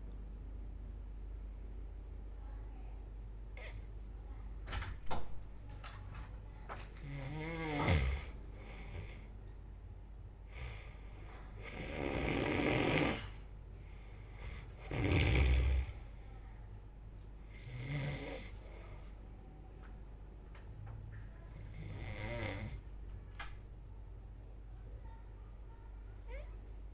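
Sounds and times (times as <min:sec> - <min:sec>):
person snoring: 0:07.0 - 0:09.3, 0:11.6 - 0:13.4, 0:14.4 - 0:16.0, 0:17.5 - 0:18.6, 0:21.6 - 0:22.8.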